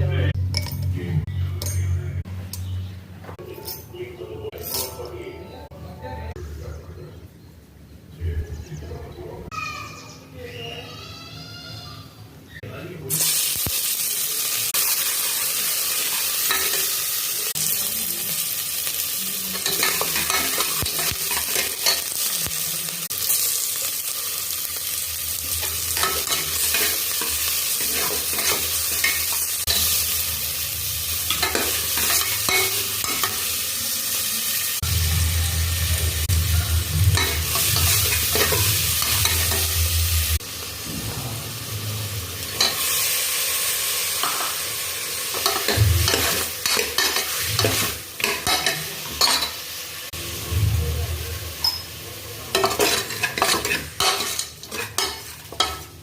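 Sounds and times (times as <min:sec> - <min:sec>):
food sizzling in oil: 0:13.1 - 0:56.0
spoon scraping a pan: 0:19.5 - 0:22.3, 0:25.6 - 0:30.0, 0:31.3 - 0:33.5, 0:37.1 - 0:39.8, 0:45.3 - 0:49.6, 0:52.5 - 0:56.0
low hum: 0:34.8 - 0:42.7, 0:50.2 - 0:51.6.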